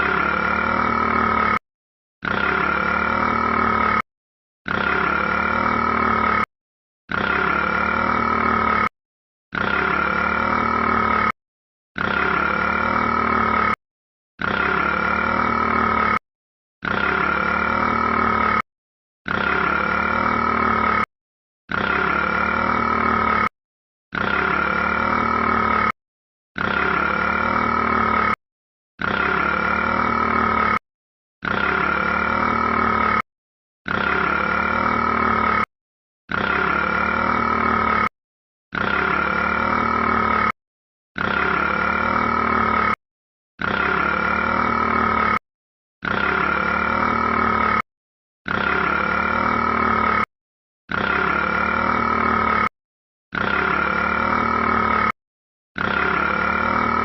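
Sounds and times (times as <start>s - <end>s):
rat grunting: 7.1s - 8.9s, 9.5s - 11.4s, 12.0s - 13.8s, 14.4s - 16.2s, 26.6s - 28.4s, 29.0s - 30.8s, 36.3s - 38.1s, 41.2s - 43.0s, 43.6s - 45.4s, 55.8s - 57.0s.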